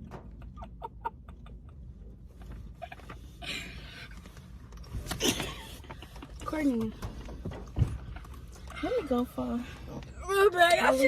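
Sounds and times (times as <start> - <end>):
car cabin rumble: 0.0 - 11.0.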